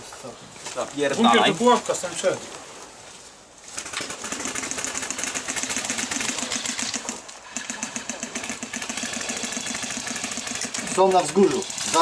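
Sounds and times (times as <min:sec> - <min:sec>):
airsoft gun firing automatic: 0:03.8 - 0:12.0.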